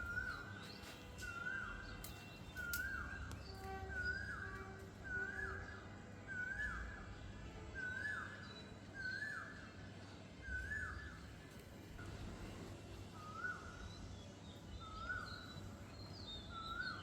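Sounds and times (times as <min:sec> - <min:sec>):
faint high bird chirps: 0:00.0 - 0:09.8.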